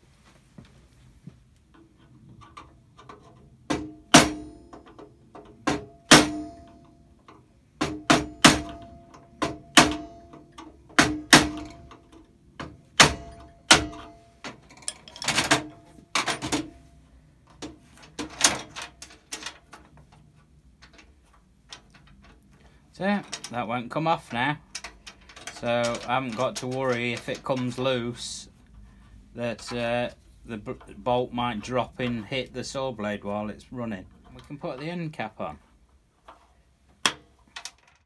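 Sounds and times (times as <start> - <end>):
hammer striking steel bolt: 3.7 - 4.9, 5.7 - 6.9, 7.8 - 12.0, 12.6 - 14.2.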